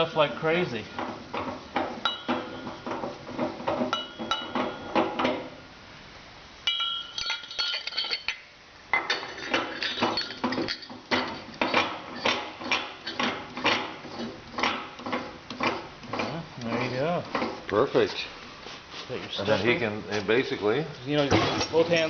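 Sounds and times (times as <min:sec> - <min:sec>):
metal parts clanking: 0:06.7 - 0:08.4, 0:09.0 - 0:13.8.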